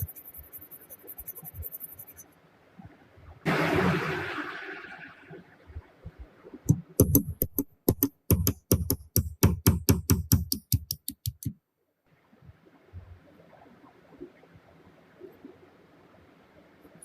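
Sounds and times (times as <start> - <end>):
rapid sharp knocks: 6.7 - 11.6.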